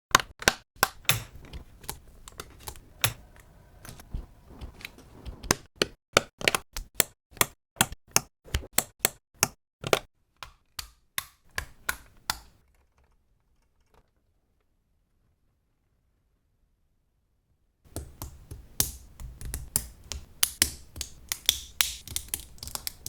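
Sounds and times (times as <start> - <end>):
plastic bricks clicking together: 17.9 - 23.0.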